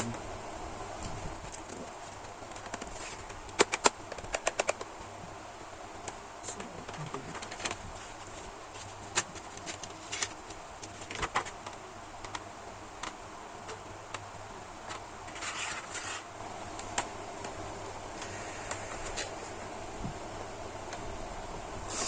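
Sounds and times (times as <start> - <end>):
scraping rustle: 14.8 - 16.3.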